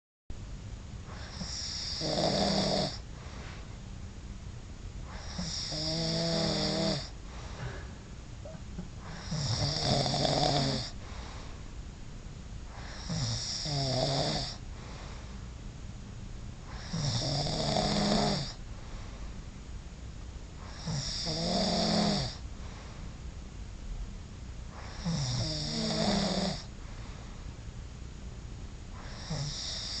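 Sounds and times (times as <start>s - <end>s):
loud snoring: 1.2s - 3.0s, 5.1s - 7.1s, 9.0s - 11.0s, 12.8s - 14.6s, 16.7s - 18.6s, 20.7s - 22.4s, 24.8s - 26.7s, 29.0s - 30.0s.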